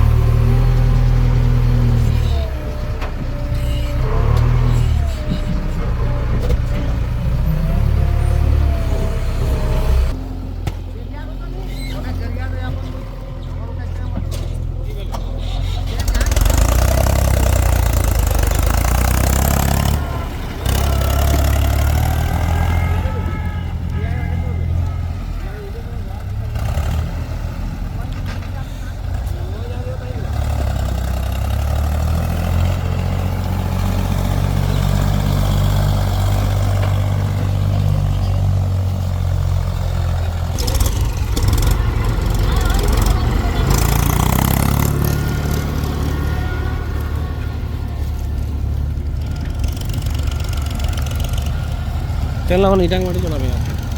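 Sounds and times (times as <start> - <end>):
heavy diesel engine running: 0.0 - 53.9
rattling noise: 40.0 - 47.3.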